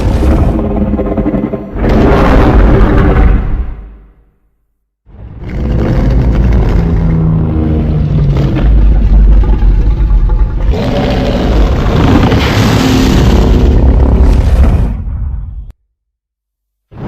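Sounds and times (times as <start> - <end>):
heavy rumble: 0.0 - 3.9, 5.1 - 15.7
monster growl: 5.2 - 14.5.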